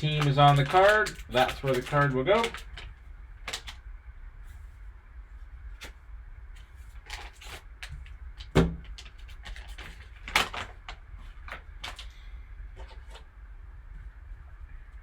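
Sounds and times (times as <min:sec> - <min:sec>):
packaging clicks and rustles: 0:00.0 - 0:03.8, 0:06.9 - 0:13.2.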